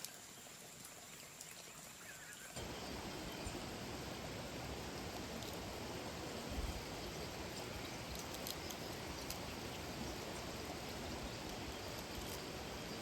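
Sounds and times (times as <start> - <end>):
waterfall and stream rushing: 0.0 - 13.0
faint light ticks: 8.1 - 9.4.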